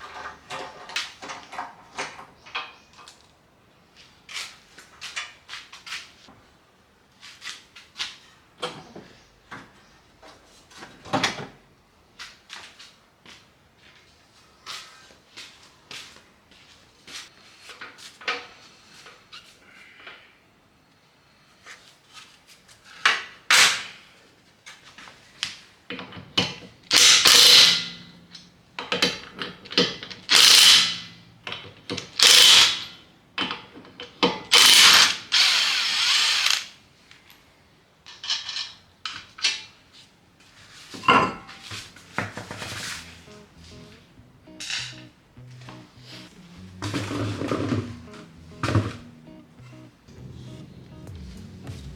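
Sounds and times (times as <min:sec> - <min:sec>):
ratchet clicks: 0:30.3 - 0:31.0
power tool whirring: 0:30.3 - 0:31.1.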